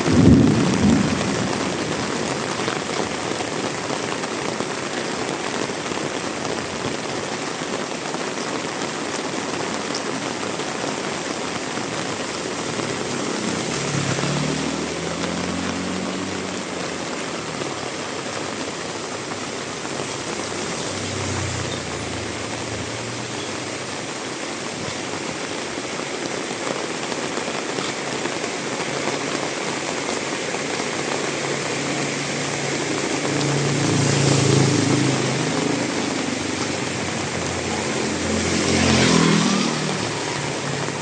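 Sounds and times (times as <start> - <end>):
heavy rain splashing: 0.0 - 41.0
vehicle engine revving: 11.9 - 17.1, 31.2 - 41.0.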